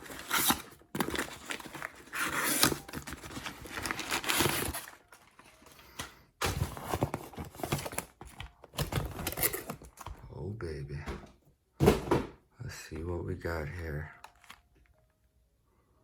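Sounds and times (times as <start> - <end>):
paper and plastic rustling: 0.0 - 10.3, 13.7 - 14.9.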